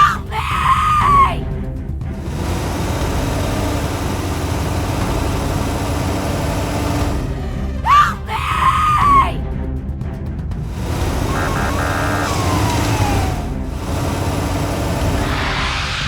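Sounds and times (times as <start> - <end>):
high wailing cartoon scream: 0.0 - 1.4, 7.8 - 9.4, 11.3 - 12.7
steady rushing noise: 10.6 - 16.0.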